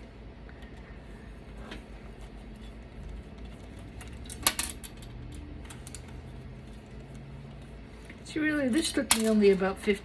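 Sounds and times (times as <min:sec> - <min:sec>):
light clicks of metal parts: 0:03.0 - 0:09.6.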